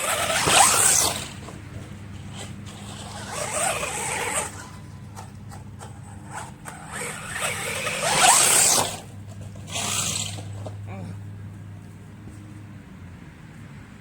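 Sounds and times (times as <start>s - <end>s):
rc truck motor whine: 0.0s - 10.8s.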